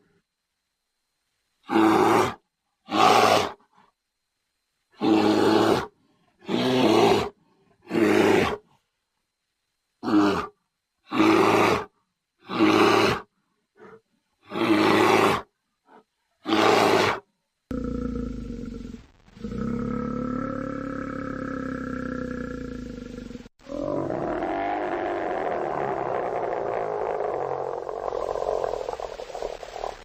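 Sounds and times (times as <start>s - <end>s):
bear roaring: 1.6s - 3.6s, 5.0s - 8.6s, 10.0s - 13.3s, 14.4s - 15.5s, 16.4s - 29.0s.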